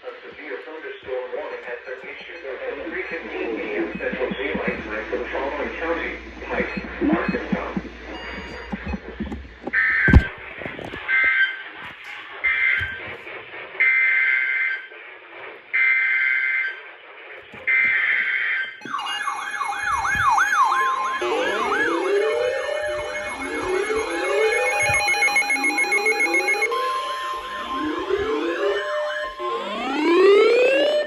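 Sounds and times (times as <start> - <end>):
electronic sirens sweeping: 2.2 - 11.2, 17.5 - 31.0
two-tone digital warbling bursts: 18.8 - 31.0.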